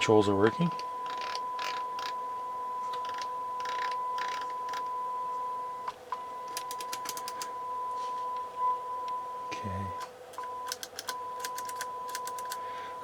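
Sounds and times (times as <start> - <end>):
sharp clicks: 6.5 - 7.5, 10.3 - 12.6.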